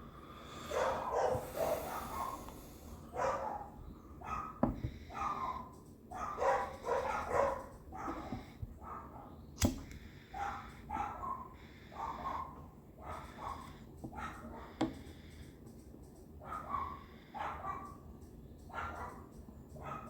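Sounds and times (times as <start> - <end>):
dog barking: 0.7 - 9.4, 10.3 - 14.7, 16.4 - 18.0, 18.7 - 20.0
sharp clicks: 5.6 - 8.6, 9.6 - 10.1, 13.1 - 16.4.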